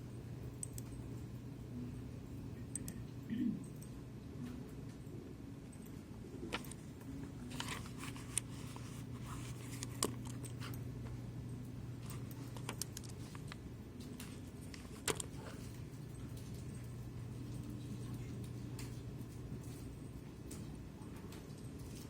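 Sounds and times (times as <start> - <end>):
steady low hum: 0.0 - 22.0
mouse and keyboard clicks: 12.0 - 13.6.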